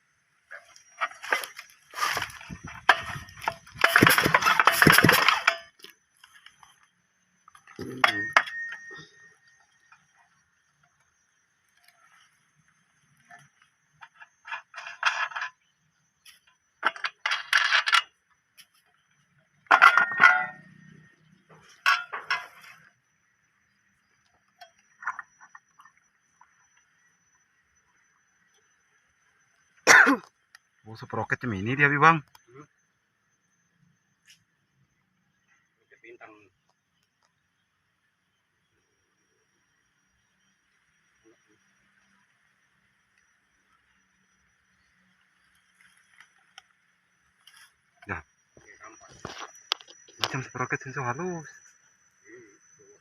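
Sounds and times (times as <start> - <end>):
metal parts clinking and rattling: 0.6 - 6.5, 7.8 - 9.1, 16.8 - 18.1, 19.7 - 20.8, 21.6 - 22.9.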